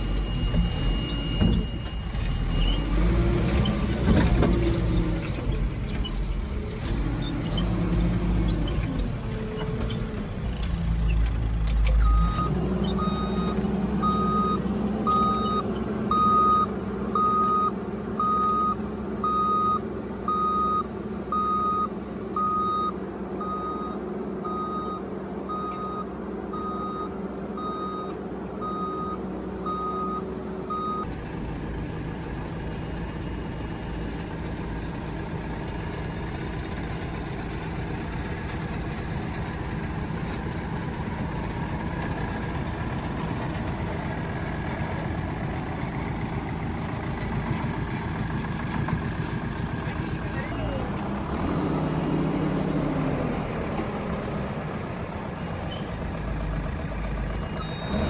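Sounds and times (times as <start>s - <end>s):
reversing alarm beeping: 0.0s - 3.9s, 12.0s - 31.1s, 57.4s - 58.0s
diesel engine running: 0.0s - 58.0s.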